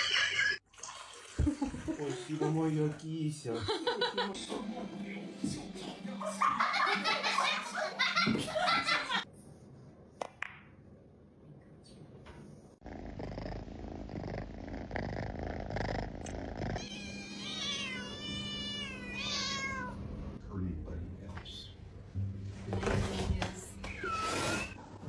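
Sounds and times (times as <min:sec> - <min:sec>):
cat purring: 0:12.8 - 0:17.3
cat meowing: 0:16.8 - 0:20.0.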